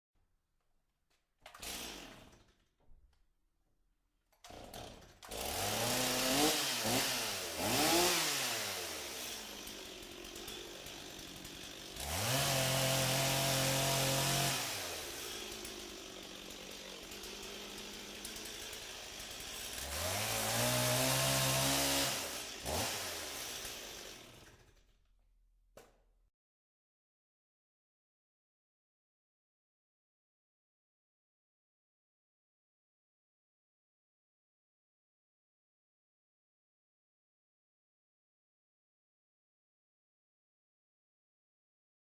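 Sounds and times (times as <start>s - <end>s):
chainsaw engine revving: 1.5s - 2.4s, 4.4s - 24.8s.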